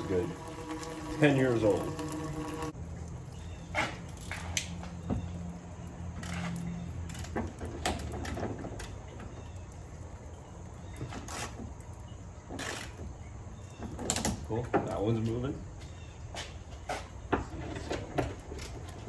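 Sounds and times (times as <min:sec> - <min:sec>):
low steady hum: 0:00.0 - 0:02.8.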